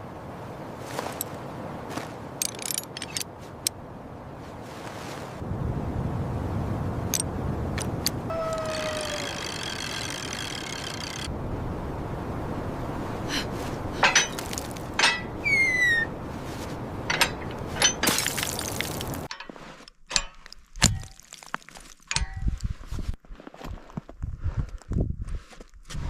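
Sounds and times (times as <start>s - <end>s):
clinks and knocks: 2.4s - 3.3s, 14.0s - 16.0s, 17.0s - 21.4s, 22.0s - 22.6s
falling whistle-like call: 8.3s - 10.2s, 15.4s - 16.1s.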